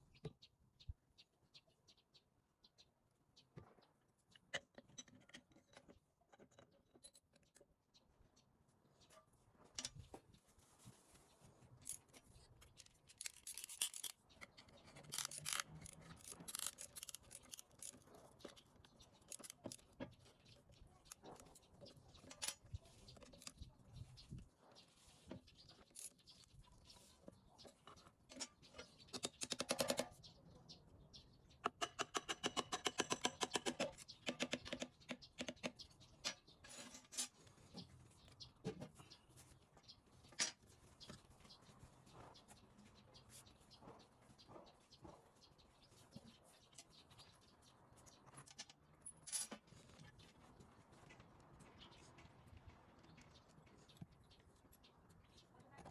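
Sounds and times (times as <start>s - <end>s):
metal parts and tools clicking: 11.8s - 23.7s, 48.3s - 50.0s.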